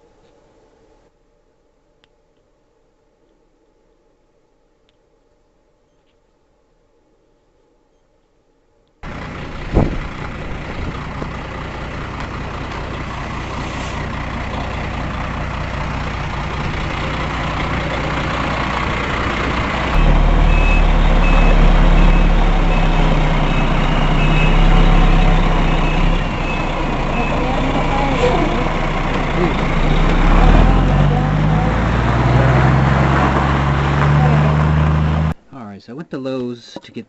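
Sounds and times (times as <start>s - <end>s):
heavy engine rumble: 9.0s - 35.4s
loud vehicle engine noise: 9.0s - 35.4s
reversing alarm beeping: 19.9s - 28.8s.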